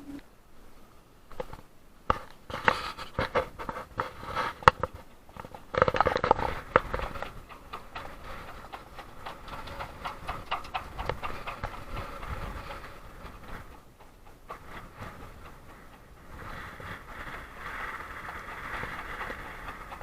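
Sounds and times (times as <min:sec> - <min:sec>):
rush of noise: 0:06.2 - 0:20.0.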